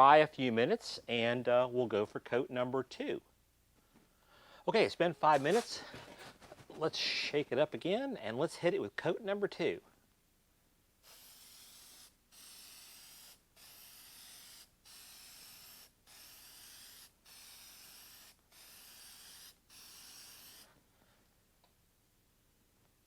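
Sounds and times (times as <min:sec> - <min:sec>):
aerosol can spraying: 0:11.0 - 0:20.7.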